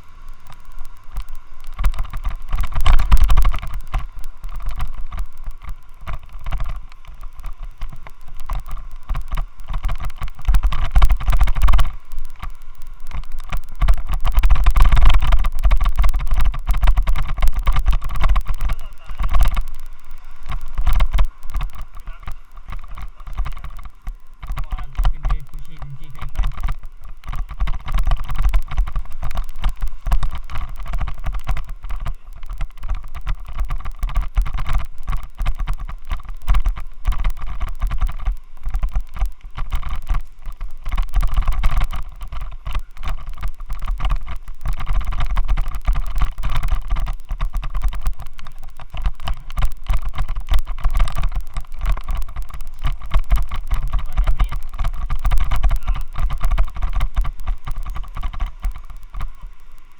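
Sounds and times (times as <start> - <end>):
deep rumble: 0.0 - 59.9.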